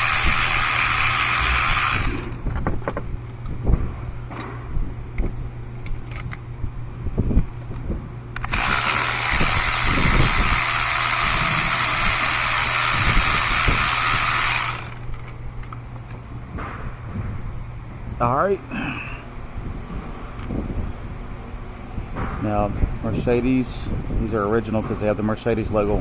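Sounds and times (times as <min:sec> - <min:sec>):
low hum: 0:00.0 - 0:24.9
steady whirring hiss: 0:07.0 - 0:26.0.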